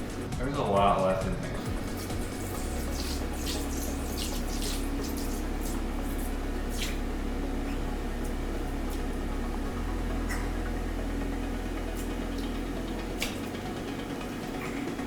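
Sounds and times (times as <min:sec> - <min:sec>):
low steady hum: 0:00.0 - 0:15.0
water running into basin: 0:01.6 - 0:07.9.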